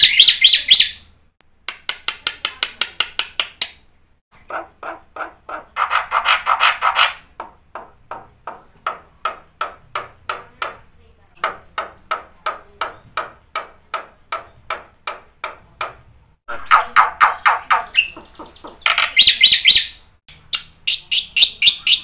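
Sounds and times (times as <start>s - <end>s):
bird chattering: 16.5s - 22.0s.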